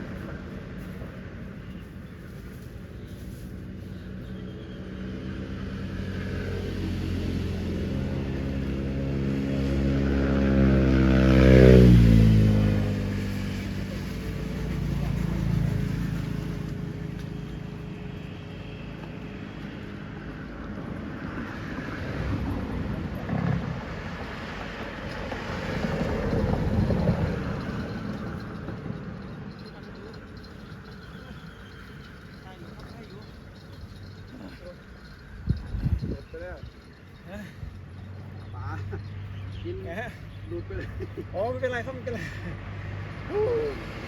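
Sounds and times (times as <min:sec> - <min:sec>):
vehicle engine passing by: 0:00.0 - 0:44.0.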